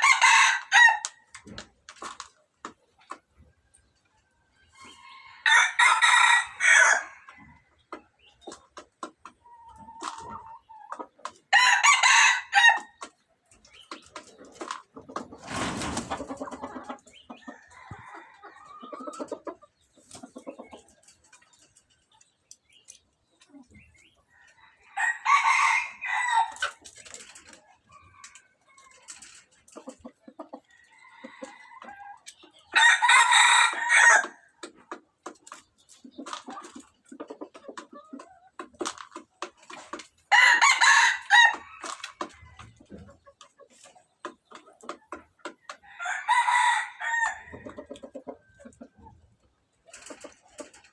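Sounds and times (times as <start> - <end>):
chicken clucking: 0.0 - 50.9
rooster crowing: 46.0 - 47.5.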